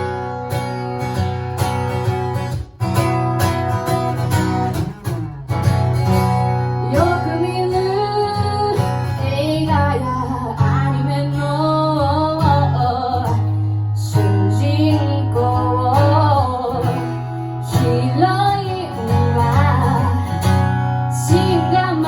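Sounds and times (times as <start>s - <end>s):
acoustic guitar strumming: 0.0s - 22.0s
woman singing: 6.8s - 22.0s.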